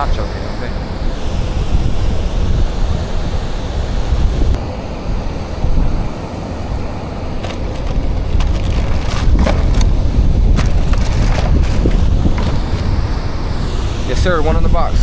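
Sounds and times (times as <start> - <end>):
wind buffeting microphone: 0.0 - 15.0
faint clicks and knocks: 7.4 - 10.0.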